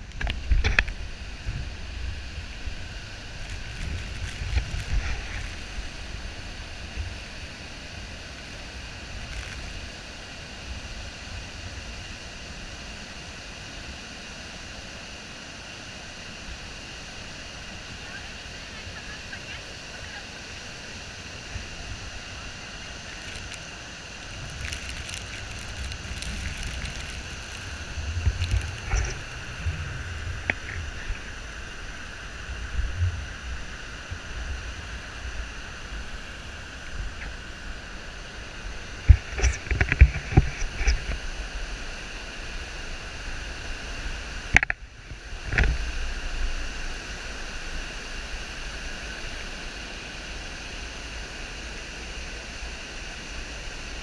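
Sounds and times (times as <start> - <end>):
wind rumbling on microphone: 0.0 - 13.8, 16.3 - 54.0
waterfall roaring: 0.0 - 54.0.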